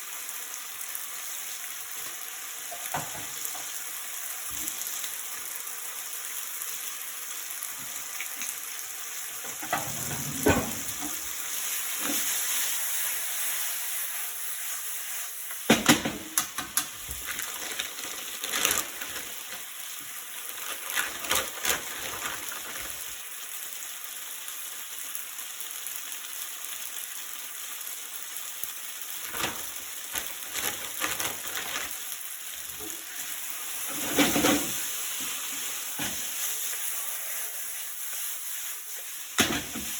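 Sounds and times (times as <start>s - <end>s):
food sizzling in a frying pan: 0.0s - 39.9s
utensil stirring in pan: 7.8s - 15.7s, 32.8s - 39.9s.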